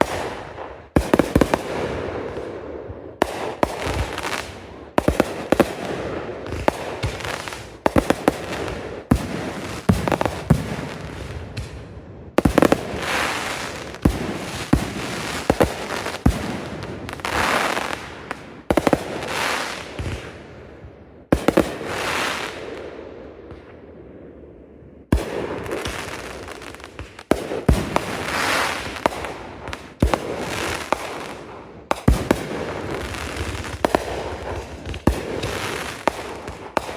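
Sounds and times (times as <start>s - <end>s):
fireworks bangs: 0.0s - 20.4s, 25.1s - 36.9s
fireworks crackling and fizzing: 3.2s - 11.8s, 12.4s - 20.4s, 25.1s - 36.9s.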